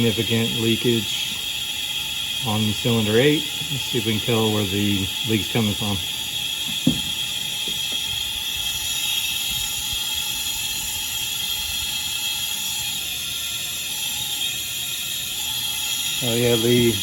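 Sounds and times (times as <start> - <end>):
compressed air hissing: 0.0 - 17.0.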